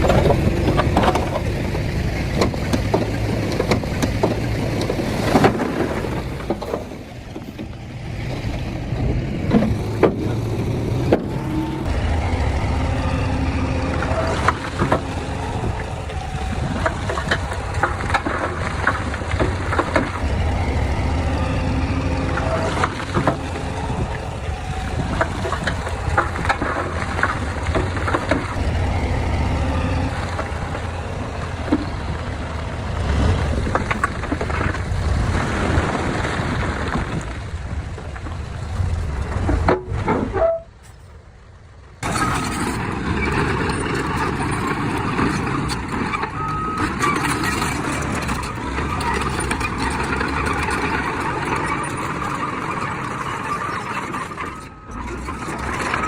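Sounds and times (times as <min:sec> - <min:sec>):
metal clanks and knocks: 0:00.0 - 0:07.8, 0:09.4 - 0:12.0, 0:16.8 - 0:20.4
bulldozer diesel engine rumbling: 0:00.0 - 0:56.0.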